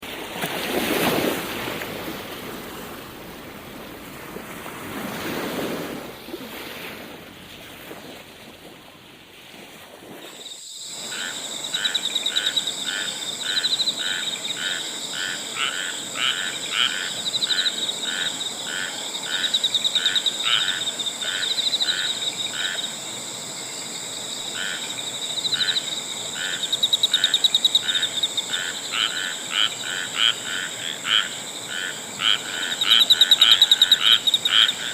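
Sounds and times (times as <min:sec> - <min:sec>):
frogs croaking: 0:10.2 - 0:34.9.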